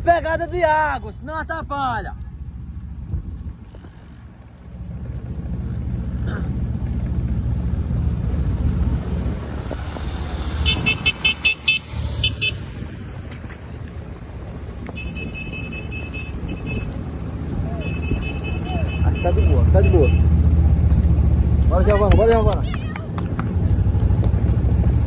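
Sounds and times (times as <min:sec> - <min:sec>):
vehicle engine rumble: 0:00.0 - 0:25.0.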